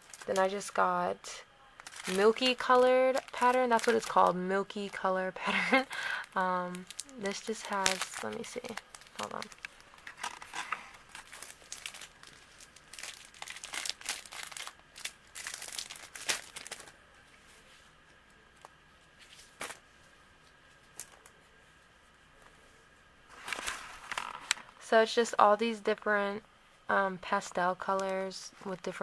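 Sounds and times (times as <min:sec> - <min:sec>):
packaging crinkling: 0:00.0 - 0:00.5, 0:01.8 - 0:05.1, 0:05.7 - 0:17.0, 0:23.3 - 0:24.8.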